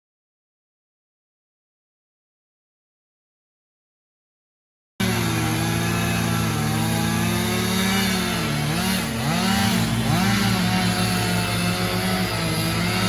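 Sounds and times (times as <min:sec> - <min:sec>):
chainsaw engine at high revs: 0:05.0 - 0:13.0.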